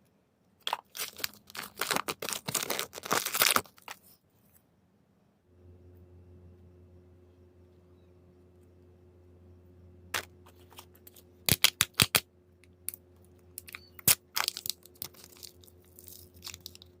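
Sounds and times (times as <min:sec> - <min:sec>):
wrapping crinkling and tearing: 0:00.6 - 0:04.2, 0:13.6 - 0:17.0
plastic egg clicks and snaps: 0:10.2 - 0:13.0, 0:13.6 - 0:16.9.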